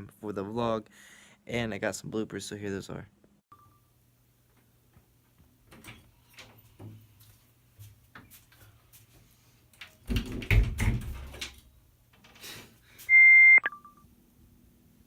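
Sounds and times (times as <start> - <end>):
electronic beep: 13.1 - 14.0.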